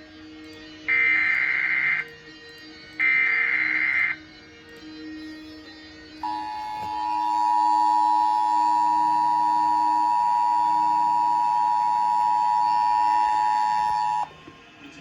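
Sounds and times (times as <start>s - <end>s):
two-tone alert signal: 6.2s - 14.3s.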